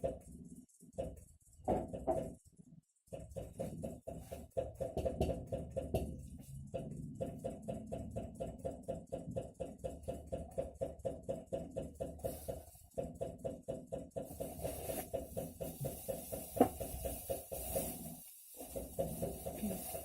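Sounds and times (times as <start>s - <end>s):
refrigerator low hum: 0.0s - 20.0s
refrigerator knocking: 1.0s - 2.4s, 3.2s - 17.9s.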